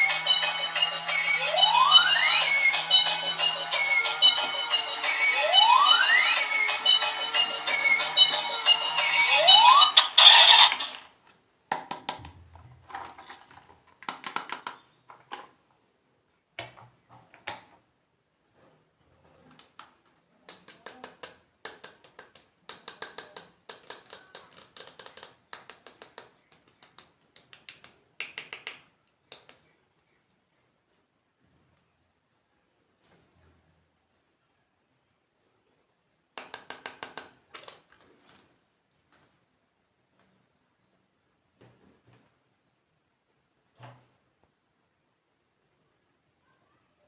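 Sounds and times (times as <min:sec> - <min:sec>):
electronic toy beeping: 0:00.0 - 0:11.1
plastic toys and packaging handled: 0:08.7 - 0:15.8, 0:18.5 - 0:28.0, 0:36.5 - 0:39.4.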